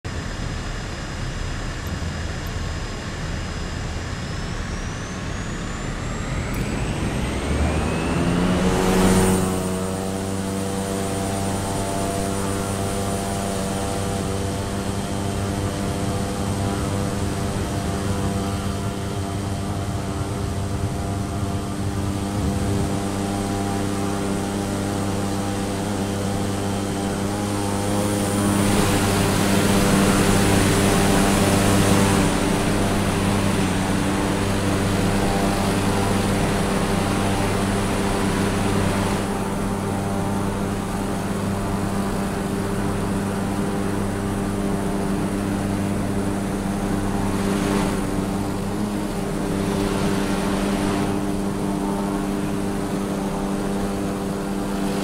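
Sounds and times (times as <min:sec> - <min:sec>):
aircraft engine and propeller: 0:00.0 - 0:55.0
broad rushing noise: 0:00.1 - 0:55.0.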